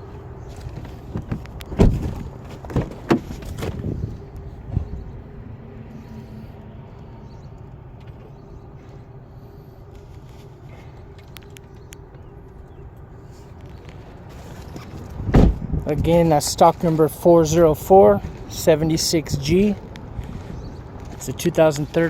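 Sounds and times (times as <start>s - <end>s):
sharp knocks and clunks: 0.7s - 3.9s, 15.2s - 15.7s.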